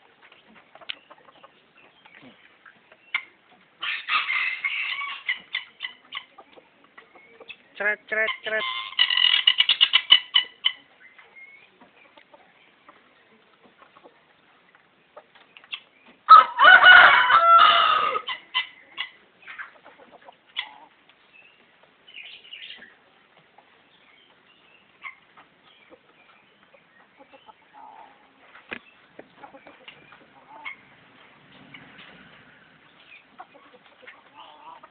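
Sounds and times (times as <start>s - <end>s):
rooster crowing: 16.3s - 18.3s.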